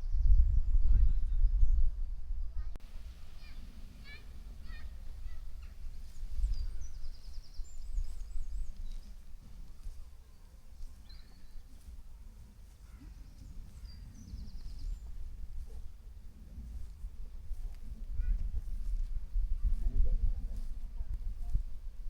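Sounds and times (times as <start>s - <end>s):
steady low rumble: 0.0s - 22.0s
songbird trilling: 3.3s - 9.2s.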